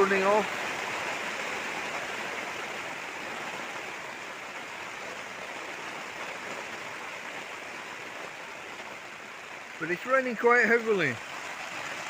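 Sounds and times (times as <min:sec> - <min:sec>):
heavy rain on a tent roof: 0:00.0 - 0:12.0.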